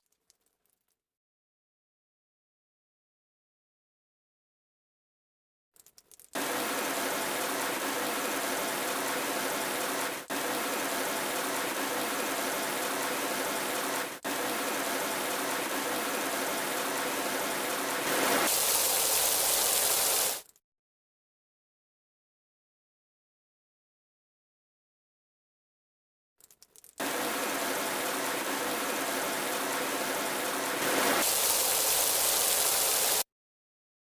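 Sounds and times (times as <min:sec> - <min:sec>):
heavy rain falling: 0:06.4 - 0:20.4, 0:27.0 - 0:33.2.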